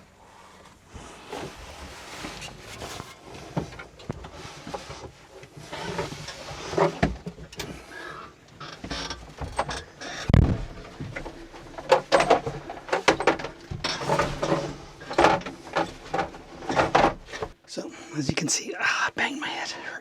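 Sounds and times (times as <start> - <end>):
rustling and shuffling: 0.0 - 7.9, 10.2 - 17.6.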